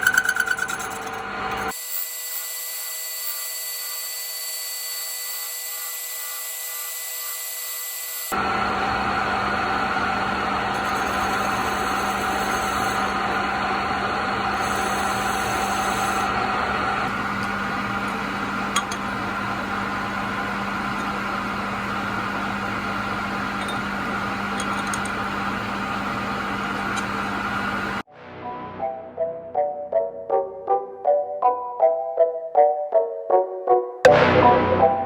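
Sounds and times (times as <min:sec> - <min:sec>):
workshop machine humming: 0:00.0 - 0:01.9, 0:08.3 - 0:28.1.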